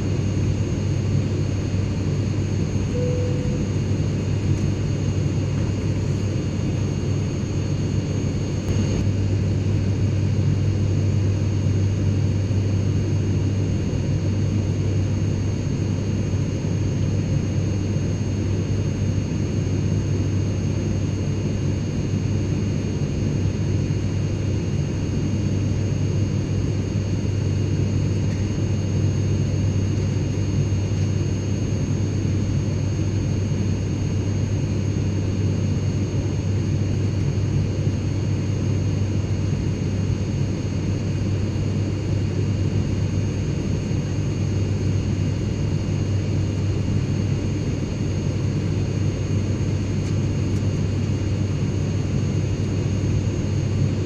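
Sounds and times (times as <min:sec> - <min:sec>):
faint high steady tones: 0:02.9 - 0:04.0.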